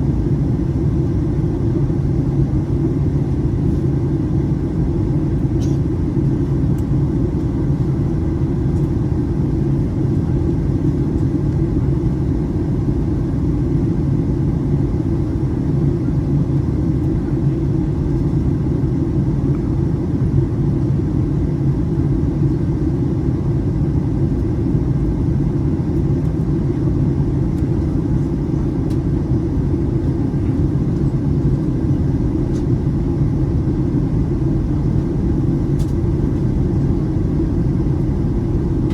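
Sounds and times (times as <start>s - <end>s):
airliner cabin rumble: 0.0s - 38.9s.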